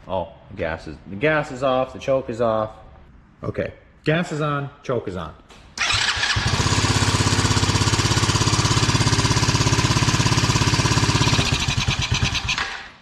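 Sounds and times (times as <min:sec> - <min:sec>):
small engine idling fast: 0:05.8 - 0:12.9.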